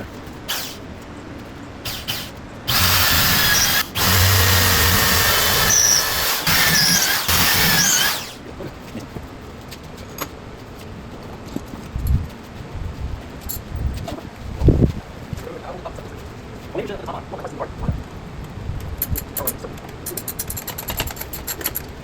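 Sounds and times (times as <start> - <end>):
power drill whining: 0.5 - 0.8, 1.8 - 8.4.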